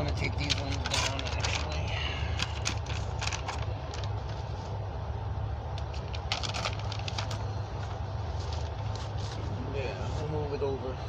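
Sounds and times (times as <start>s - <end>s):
steady low rumble: 0.0s - 11.0s
paper targets rustling and clicking: 6.0s - 7.4s.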